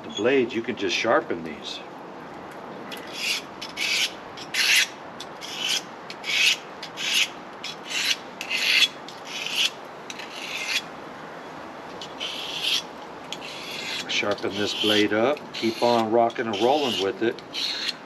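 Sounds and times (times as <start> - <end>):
knife blade scraping on sharpener: 3.0 - 10.8, 12.0 - 18.0.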